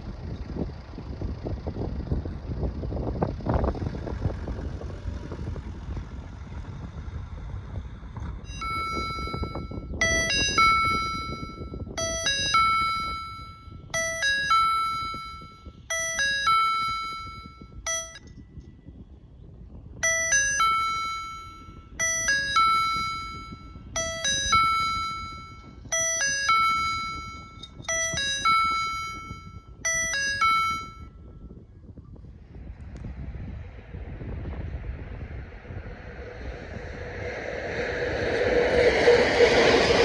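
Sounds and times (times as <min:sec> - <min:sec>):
level crossing electronic chime: 0:08.5 - 0:18.2, 0:20.0 - 0:31.1.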